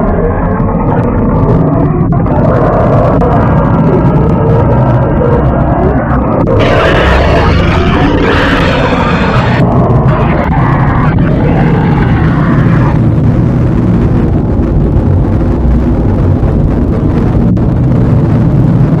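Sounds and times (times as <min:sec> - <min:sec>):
high grinding noise: 0:00.0 - 0:13.1
distorted low rumbling drone: 0:00.0 - 0:19.0.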